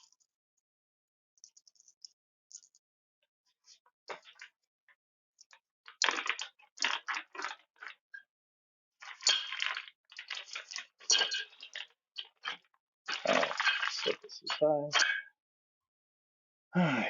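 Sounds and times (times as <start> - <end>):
parts crinkling and rustling: 9.0 - 14.6.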